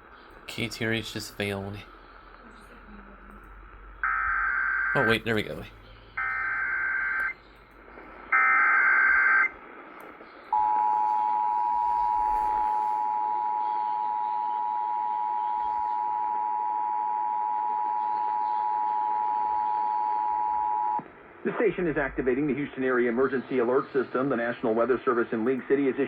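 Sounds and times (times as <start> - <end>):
steady two-tone attention signal: 10.6 - 21.0.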